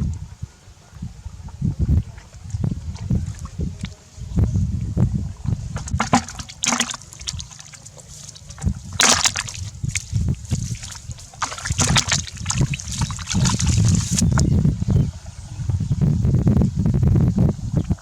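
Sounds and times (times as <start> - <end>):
water sloshing and splashing: 5.7 - 14.4.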